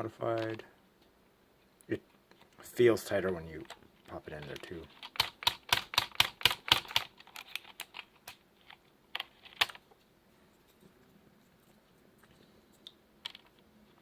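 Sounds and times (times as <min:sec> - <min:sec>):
mechanical keyboard keys clacking: 0:04.4 - 0:08.1.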